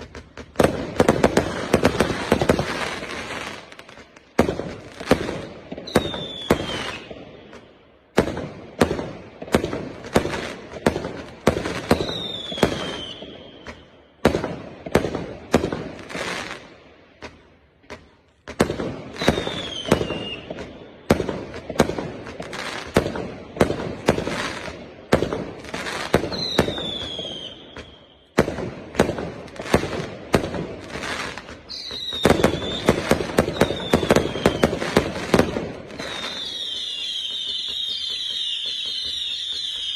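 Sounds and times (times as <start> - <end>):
firework launches and bursts: 0.0 - 17.8, 18.4 - 39.9
falling firework whistle: 5.1 - 7.6, 11.6 - 14.2, 19.1 - 20.8, 25.8 - 28.4, 30.9 - 39.9.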